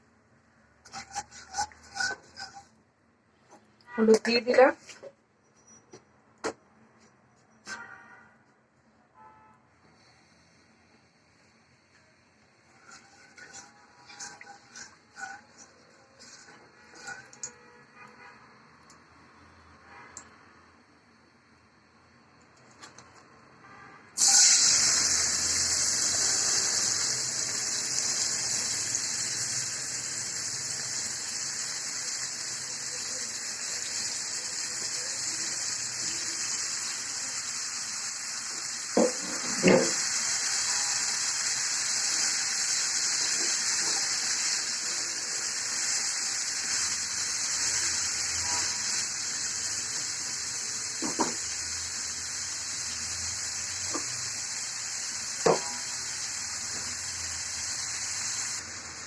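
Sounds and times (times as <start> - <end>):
vegetables sizzling in oil: 0.9 - 2.7, 12.8 - 17.4, 24.2 - 59.0.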